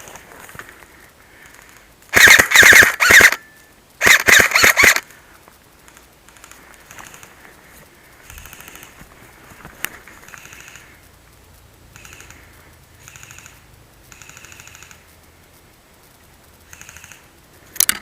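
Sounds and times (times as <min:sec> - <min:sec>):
sharp click: 0:01.7 - 0:05.0
airsoft gun full-auto bursts: 0:02.1 - 0:05.1, 0:05.9 - 0:07.3, 0:08.2 - 0:09.0, 0:10.2 - 0:11.0, 0:11.9 - 0:15.1, 0:16.6 - 0:17.4.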